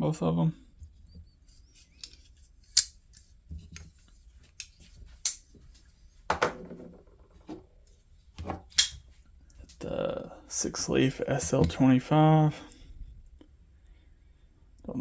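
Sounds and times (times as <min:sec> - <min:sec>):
folding knife metal clicks: 0:02.0 - 0:03.0.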